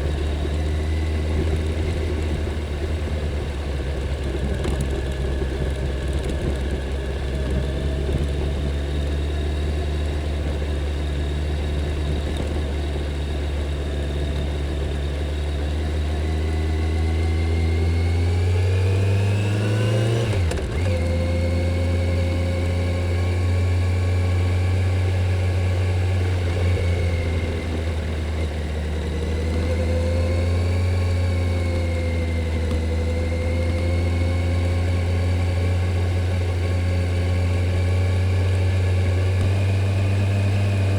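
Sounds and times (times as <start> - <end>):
motorcycle engine riding along: 0.0 - 40.9.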